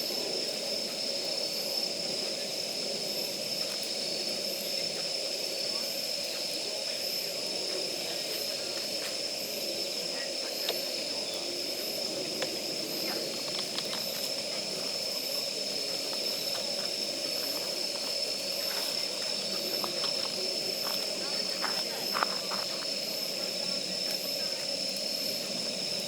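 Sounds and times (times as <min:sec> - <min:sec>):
high-pitched insect trill: 0:00.0 - 0:26.0
campfire crackling and popping: 0:12.2 - 0:15.3.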